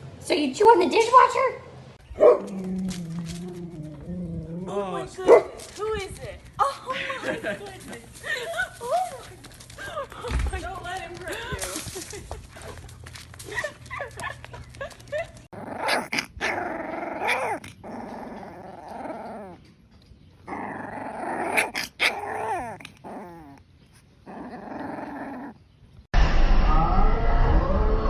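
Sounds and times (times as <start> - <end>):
dog growling: 2.4 - 5.1, 15.5 - 19.6, 20.4 - 25.7
loud sudden noise: 26.2 - 28.0.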